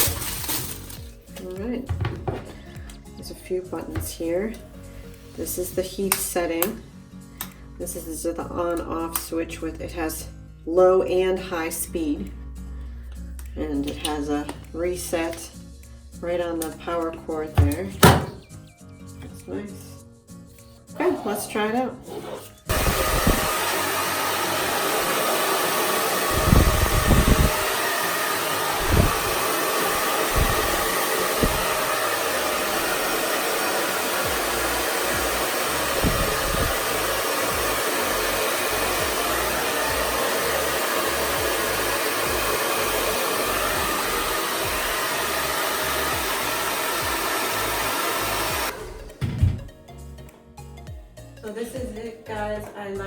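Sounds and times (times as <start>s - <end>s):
hair dryer blowing: 0.0s - 3.0s, 3.8s - 4.3s, 17.6s - 18.5s, 22.2s - 49.4s
low thuds: 49.2s - 49.8s.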